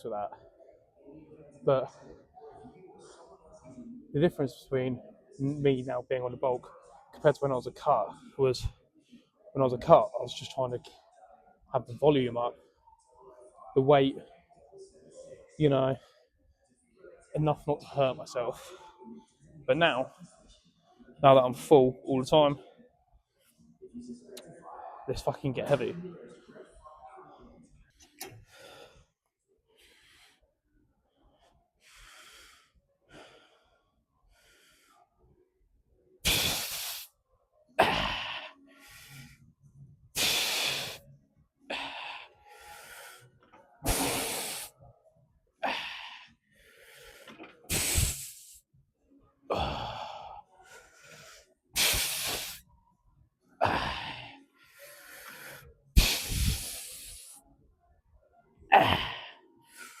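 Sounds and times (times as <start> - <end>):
person hissing exhalations: 36.2 - 37.1, 40.2 - 41.0, 43.8 - 44.7, 47.7 - 48.6, 51.8 - 52.6, 56.0 - 57.4.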